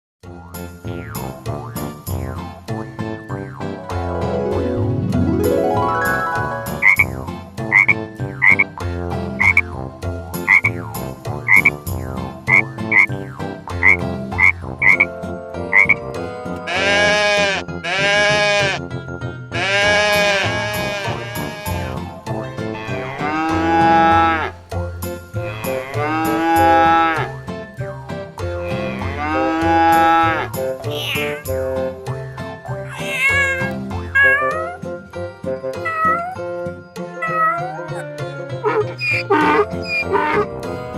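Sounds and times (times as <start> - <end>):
background music with steady beat: 0.3 - 19.6, 20.3 - 32.6
frog croaking: 6.7 - 8.7, 9.4 - 9.7, 10.4 - 10.8, 11.5 - 11.8, 12.5 - 13.1, 13.7 - 15.1, 15.7 - 16.0, 38.6 - 40.6
cow mooing: 16.7 - 18.8, 19.6 - 22.0, 22.8 - 24.6, 25.4 - 27.3, 28.6 - 30.6, 38.6 - 40.5.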